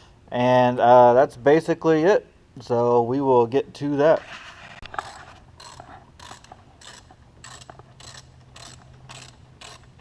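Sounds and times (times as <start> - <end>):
ratchet wrench clicking: 5.0 - 10.0.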